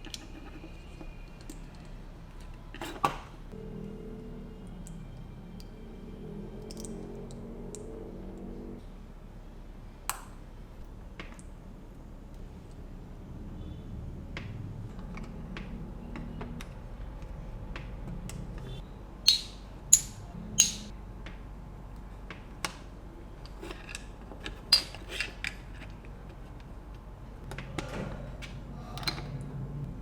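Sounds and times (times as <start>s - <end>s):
plastic bricks clicking together: 19.3s - 20.9s.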